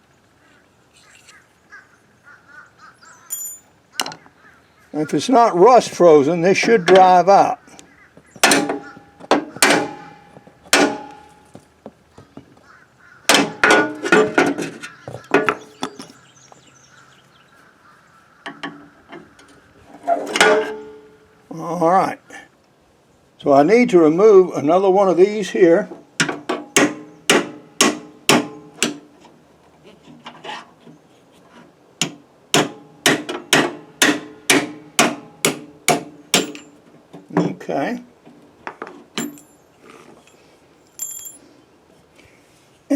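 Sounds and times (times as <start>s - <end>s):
hammer striking metal: 3.3s - 3.7s, 9.6s - 11.4s, 32.6s - 36.7s.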